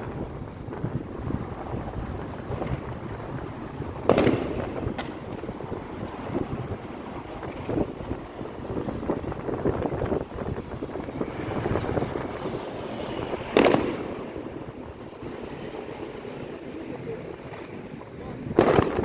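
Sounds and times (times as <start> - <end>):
wind buffeting microphone: 0.0 - 19.0
firework bang: 2.0 - 15.0, 18.5 - 19.0.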